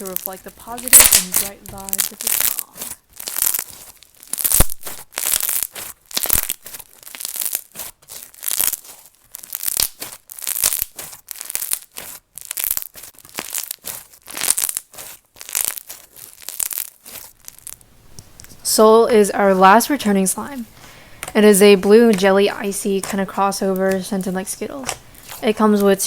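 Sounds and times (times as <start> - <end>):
slime crackling when squeezed: 0.0 - 26.0.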